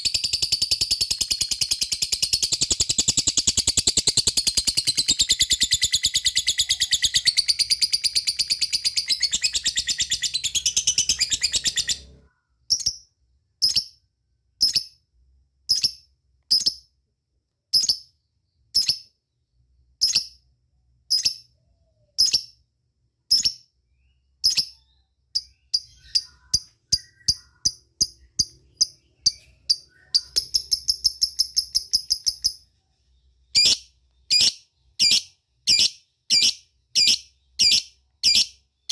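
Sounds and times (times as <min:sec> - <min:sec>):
lovebird chattering trill: 0:00.0 - 0:13.0, 0:24.4 - 0:32.6, 0:33.5 - 0:38.9
lovebird chirps: 0:00.0 - 0:14.0, 0:14.6 - 0:15.0, 0:15.7 - 0:17.0, 0:17.7 - 0:38.9.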